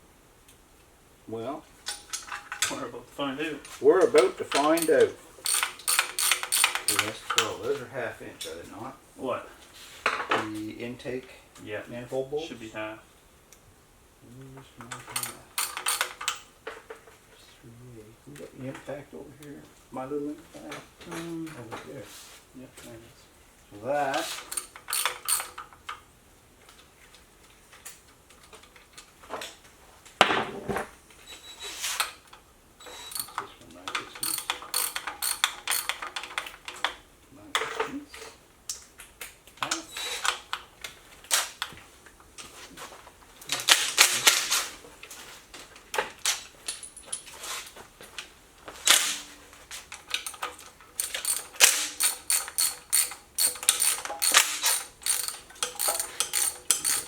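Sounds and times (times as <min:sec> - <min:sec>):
wrenches clicking and rattling: 0:01.8 - 0:02.8, 0:03.6 - 0:08.6, 0:14.8 - 0:17.1, 0:24.1 - 0:26.0, 0:32.9 - 0:37.0, 0:43.5 - 0:44.9, 0:48.8 - 0:57.0
metal tools clinking: 0:03.6 - 0:07.8, 0:14.9 - 0:16.5, 0:24.1 - 0:25.7, 0:32.9 - 0:36.5, 0:46.6 - 0:47.6, 0:48.9 - 0:57.0.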